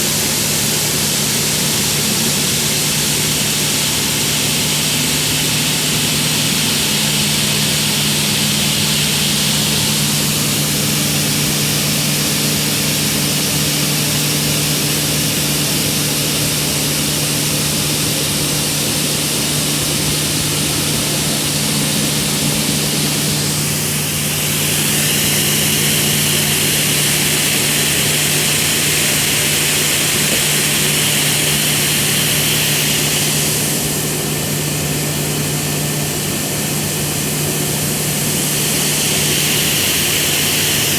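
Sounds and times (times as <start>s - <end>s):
table saw motor hum: 17.1s - 34.0s
dust extraction air hiss: 18.7s - 34.0s, 38.2s - 40.9s.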